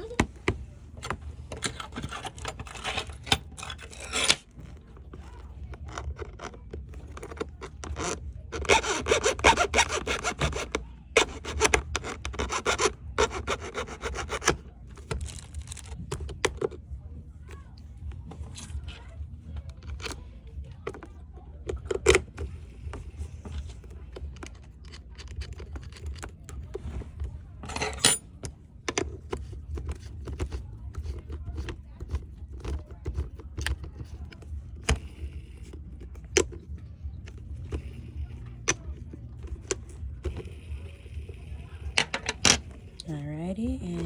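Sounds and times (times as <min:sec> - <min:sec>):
steady low hum: 0:14.6 - 0:44.0.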